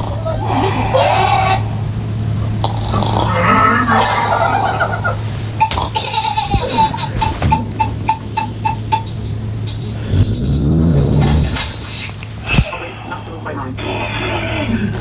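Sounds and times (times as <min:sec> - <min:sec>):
small child giggling: 0:03.5 - 0:08.0.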